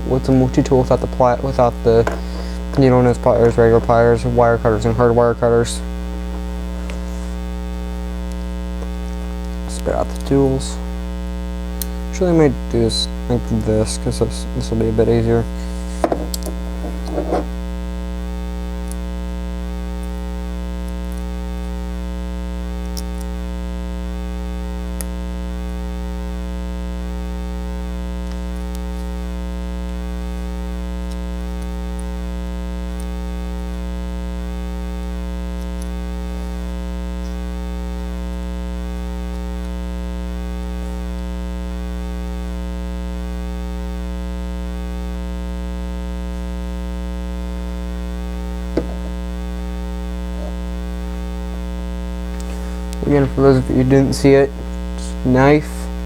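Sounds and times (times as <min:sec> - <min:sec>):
electrical mains hum: 0:00.0 - 0:56.0.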